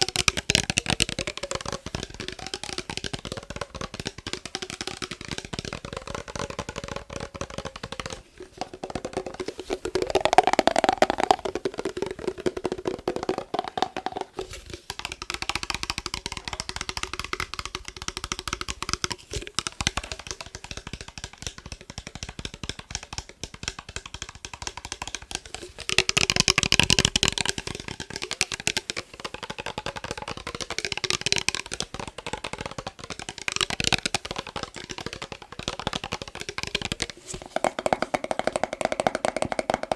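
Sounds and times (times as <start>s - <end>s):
fast tapping on glass jar: 0.0s - 39.9s.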